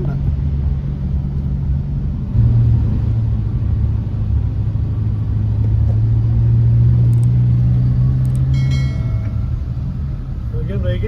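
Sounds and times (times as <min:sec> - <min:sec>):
car engine humming: 0:00.0 - 0:11.0.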